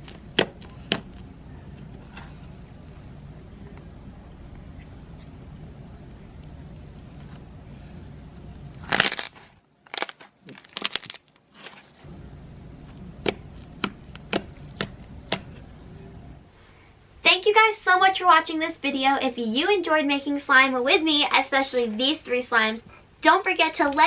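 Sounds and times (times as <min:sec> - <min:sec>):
faint low hum: 0:00.0 - 0:10.6, 0:11.6 - 0:24.0
crackling pops: 0:08.8 - 0:11.2
slime squelching: 0:12.8 - 0:15.8.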